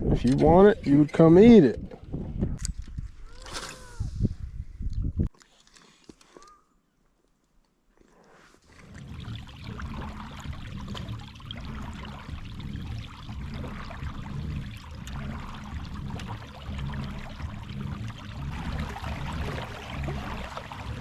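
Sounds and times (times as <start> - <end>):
low rumble: 8.8 - 21.0
water rushing along kayak hull: 8.8 - 21.0.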